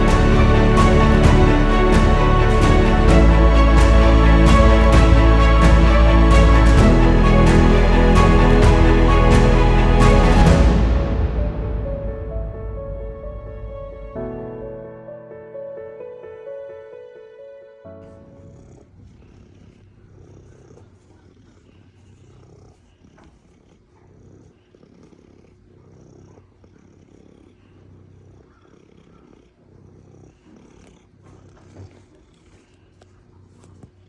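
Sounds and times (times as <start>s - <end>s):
background music: 0.0s - 18.6s
cat purring: 18.1s - 34.0s.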